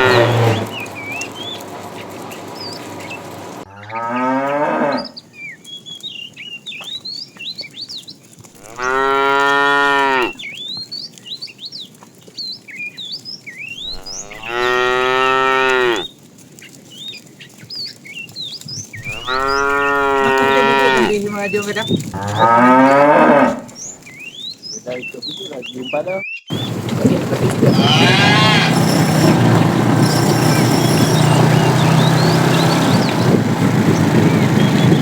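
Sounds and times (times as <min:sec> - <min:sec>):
cows mooing: 0:00.0 - 0:01.6, 0:03.7 - 0:05.2, 0:08.6 - 0:10.4, 0:13.8 - 0:16.1, 0:19.0 - 0:21.4, 0:22.1 - 0:23.9, 0:26.5 - 0:35.0.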